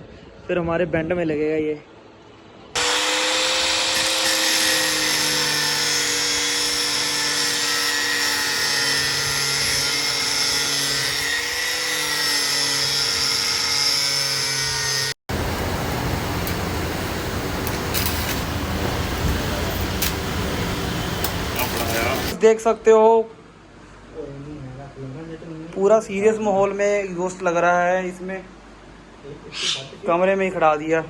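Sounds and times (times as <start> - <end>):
angle grinder cutting metal pipe: 2.8 - 22.4
steady noise: 15.3 - 22.4.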